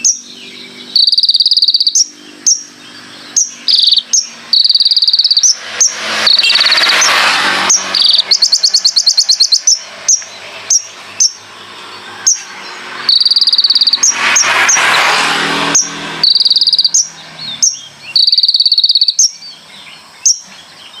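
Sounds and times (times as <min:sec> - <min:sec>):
sunbird chirps and trills: 0:00.0 - 0:21.0
loud rushing noise: 0:02.3 - 0:18.0.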